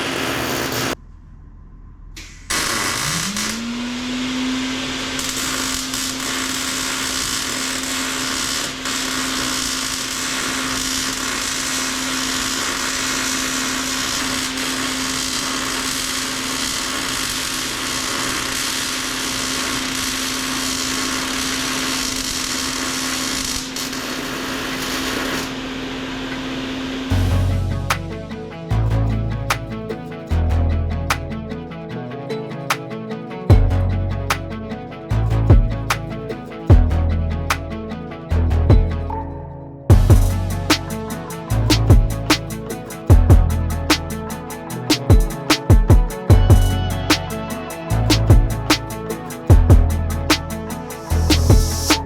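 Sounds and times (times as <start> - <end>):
power tool motor running: 2.5 - 23.8.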